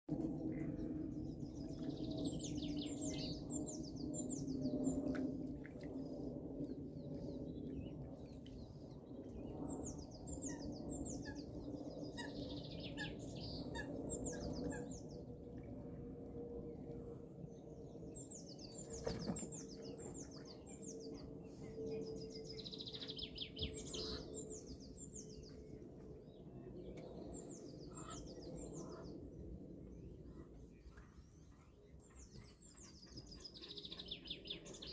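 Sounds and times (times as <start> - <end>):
low steady drone: 0.1 - 34.9
songbird singing: 7.1 - 15.3, 18.1 - 25.7.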